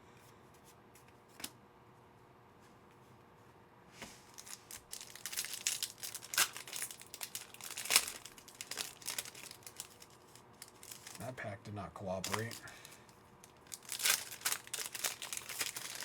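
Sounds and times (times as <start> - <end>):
wrapper tearing and crinkling: 4.3 - 11.2, 12.2 - 16.0.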